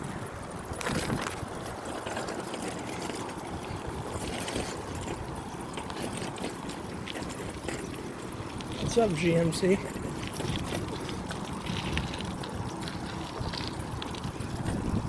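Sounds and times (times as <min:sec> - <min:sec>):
traffic: 0:00.0 - 0:15.0
wind on microphone: 0:00.0 - 0:15.0.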